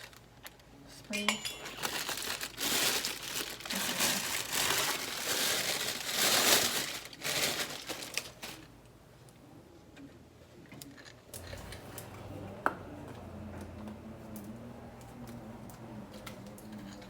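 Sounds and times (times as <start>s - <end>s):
packaging crinkling and rustling: 0.0s - 0.3s, 1.5s - 8.8s.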